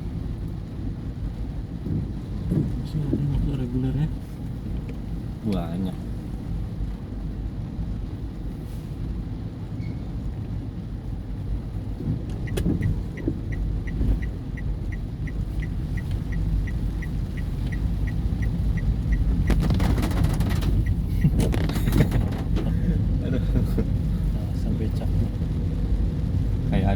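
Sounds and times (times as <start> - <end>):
car engine rumble inside cabin: 0.0 - 26.9
heavy rain pelting car roof: 10.7 - 26.9
regular ticking: 12.3 - 22.6.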